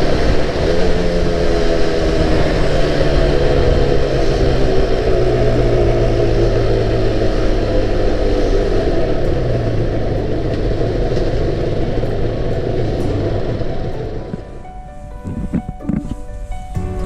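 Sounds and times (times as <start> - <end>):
two-stroke motorcycle engine running: 0.0 - 14.6
wind noise: 0.0 - 17.0.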